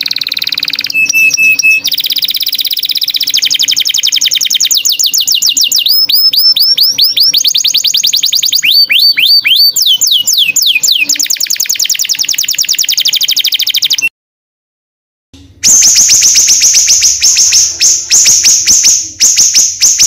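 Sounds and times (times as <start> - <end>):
downward-sweeping bird whistles: 0.0 - 14.1
songbird trill: 0.0 - 14.1, 15.6 - 20.0.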